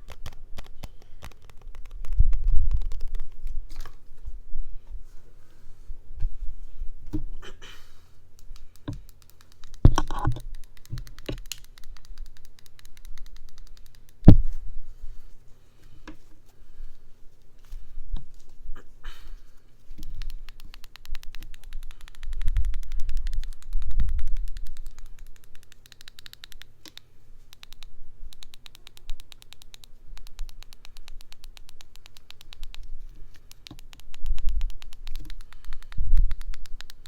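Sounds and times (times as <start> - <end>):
rapid light clicking and tapping: 0.0 - 3.6, 8.3 - 14.5, 19.9 - 37.0.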